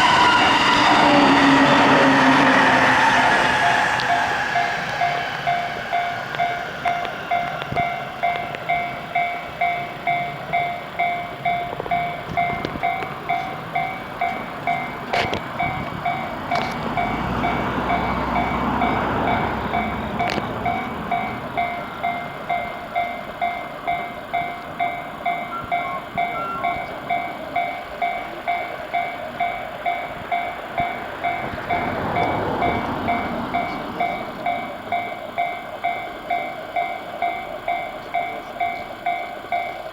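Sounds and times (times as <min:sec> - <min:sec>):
level-crossing warning bell: 0:00.0 - 0:39.9
passing train rumble: 0:00.0 - 0:39.9.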